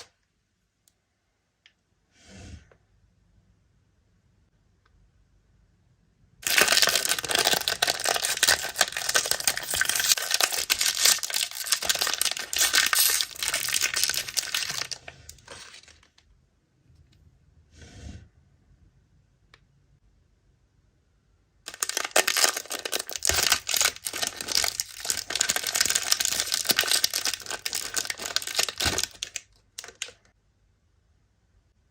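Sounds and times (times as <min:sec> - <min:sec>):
packaging crinkling and tearing: 0:06.4 - 0:16.2, 0:21.7 - 0:30.3.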